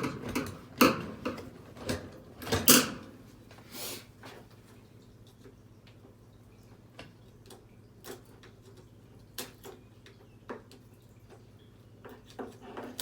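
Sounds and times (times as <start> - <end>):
parts clicking and knocking: 0.0 - 3.1.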